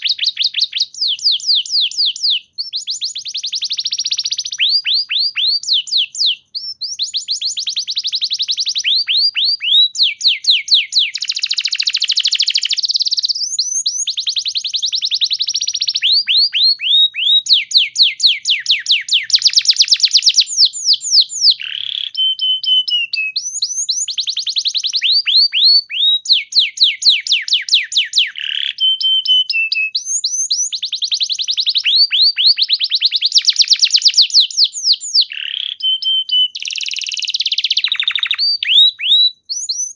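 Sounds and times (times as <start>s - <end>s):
canary falling whistle: 0.0s - 39.9s
canary singing trills: 0.0s - 39.9s.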